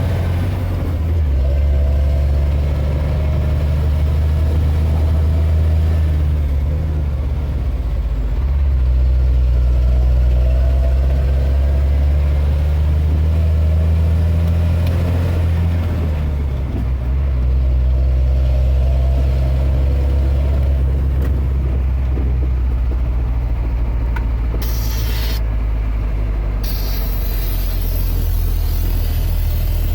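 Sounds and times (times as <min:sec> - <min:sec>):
diesel truck engine rumbling: 0:00.0 - 0:29.9
short hissing: 0:24.6 - 0:25.5, 0:26.6 - 0:29.9.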